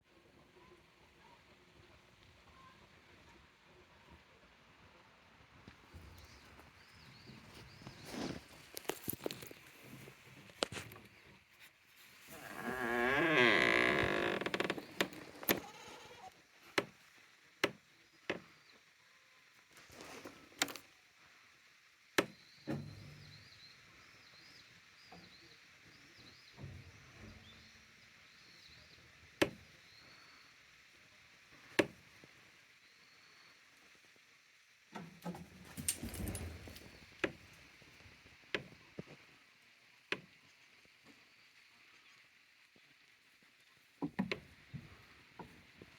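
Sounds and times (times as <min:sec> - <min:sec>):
goat bleating: 0:15.5 - 0:16.3.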